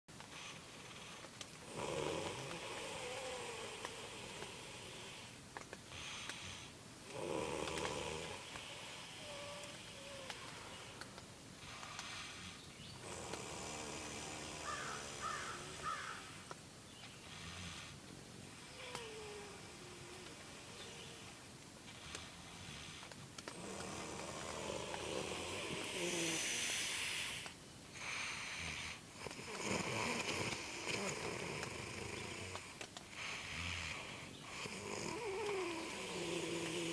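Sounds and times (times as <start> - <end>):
man snoring: 0.8 - 5.3, 6.2 - 11.0, 11.7 - 16.5, 17.3 - 21.4, 22.0 - 36.9.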